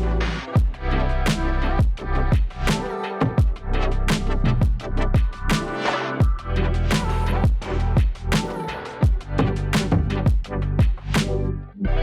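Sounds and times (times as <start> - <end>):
electronic music with heavy beats: 0.0 - 11.5.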